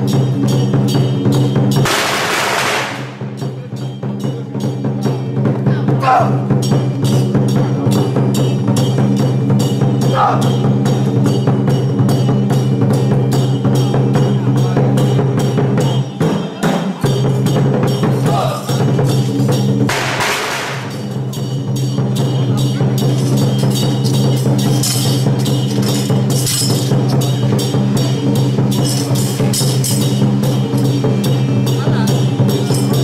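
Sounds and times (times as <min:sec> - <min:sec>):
drum and gong percussion: 0:00.0 - 0:33.0
noisy cymbal crash: 0:01.7 - 0:03.5, 0:19.9 - 0:21.5.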